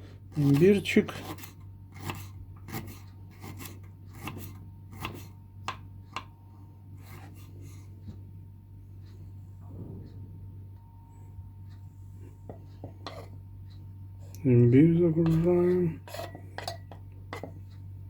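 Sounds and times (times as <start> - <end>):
low steady hum: 0.0 - 18.0
knife cutting on cutting board: 0.4 - 5.3.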